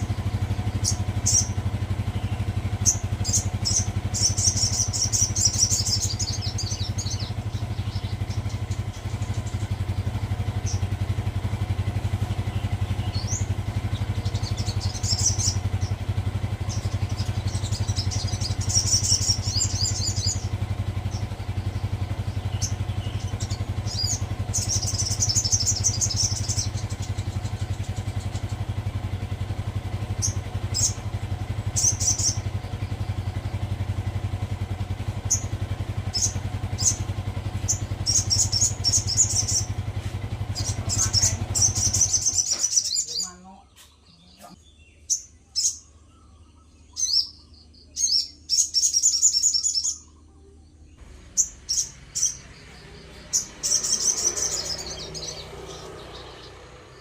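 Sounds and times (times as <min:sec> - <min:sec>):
songbird trilling: 0:00.0 - 0:57.0
steady low hum: 0:00.0 - 0:57.0.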